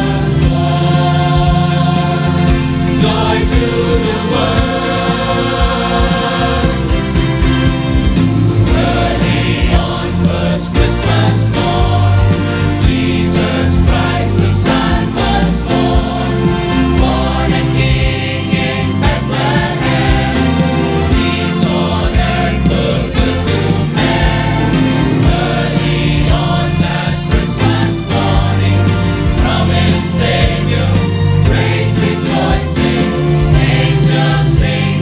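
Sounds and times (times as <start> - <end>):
choir singing: 0.0 - 35.0
instrumental accompaniment with bass: 0.0 - 35.0
steady drum beat: 0.0 - 35.0.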